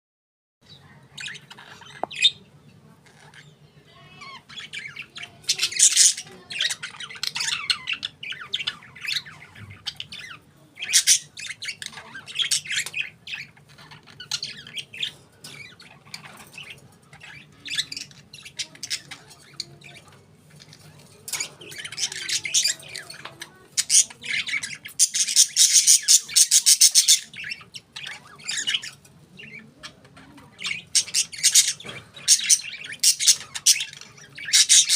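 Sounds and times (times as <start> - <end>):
budgerigars chirping and squawking: 0.6 - 34.9.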